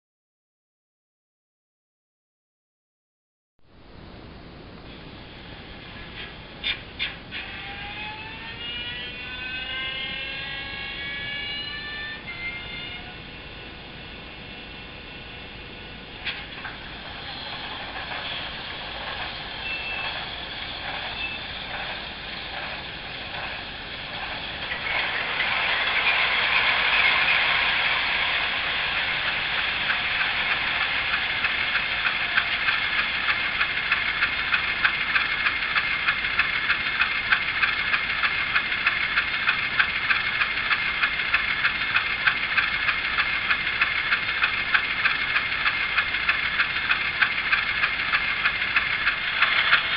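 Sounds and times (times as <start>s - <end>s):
diesel engine sound from small speaker: 5.6s - 49.9s.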